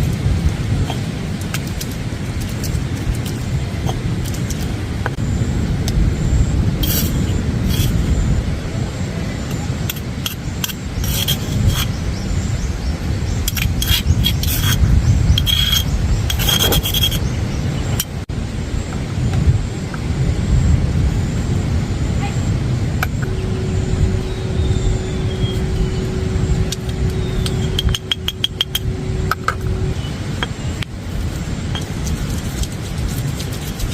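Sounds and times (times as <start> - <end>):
wind buffeting microphone: 0.0 - 33.9
rustling and scraping: 6.8 - 8.2, 9.8 - 12.0, 13.4 - 17.4, 26.6 - 33.9.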